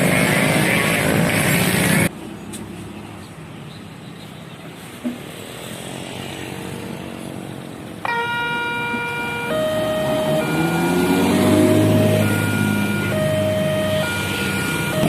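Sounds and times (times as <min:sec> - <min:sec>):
traffic hum: 0:00.0 - 0:15.0
electronic warning siren: 0:08.0 - 0:15.0
vehicle engine cutting off: 0:09.5 - 0:15.0.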